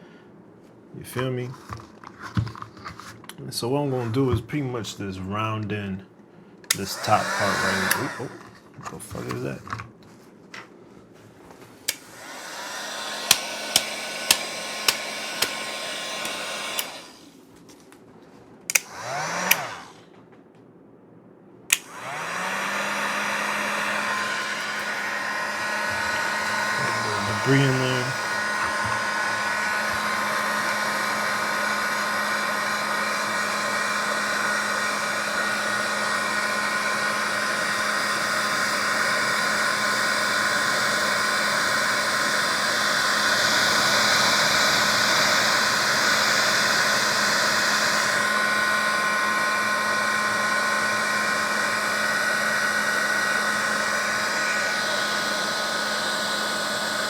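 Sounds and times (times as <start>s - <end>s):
heat gun blowing: 6.7s - 8.6s, 11.8s - 17.4s, 18.7s - 20.1s, 21.7s - 57.0s.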